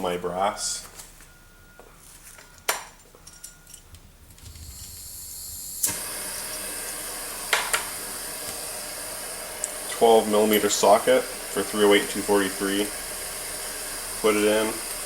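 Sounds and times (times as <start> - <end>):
gas torch hissing: 4.4 - 15.0.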